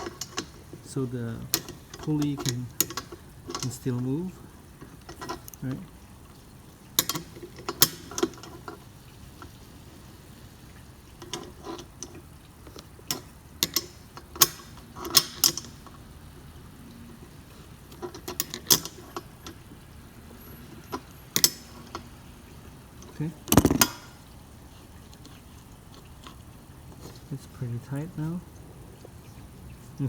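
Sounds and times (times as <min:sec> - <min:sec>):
wrenches clicking against nut: 0:00.0 - 0:05.9, 0:07.0 - 0:08.8, 0:11.2 - 0:16.0, 0:17.0 - 0:19.7, 0:20.3 - 0:22.2, 0:22.9 - 0:24.3.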